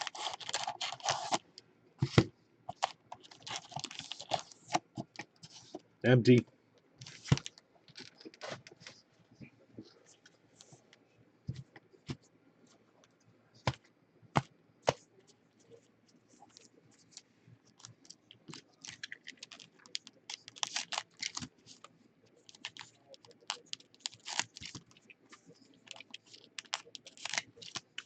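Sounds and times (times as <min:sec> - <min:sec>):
cards and foil wrappers crinkling: 0:00.0 - 0:01.5, 0:02.1 - 0:05.7, 0:07.0 - 0:09.0, 0:17.1 - 0:28.0.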